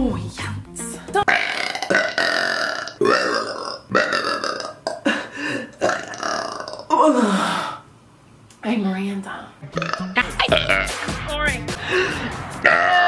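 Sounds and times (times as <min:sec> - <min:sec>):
woman burping: 0:01.3 - 0:07.3, 0:09.8 - 0:11.0.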